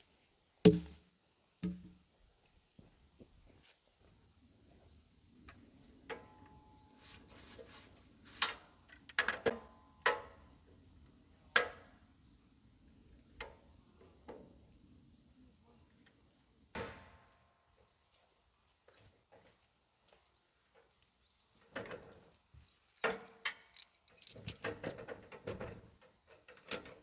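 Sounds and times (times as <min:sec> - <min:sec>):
sharp knocks and clacks: 0:00.7 - 0:01.0.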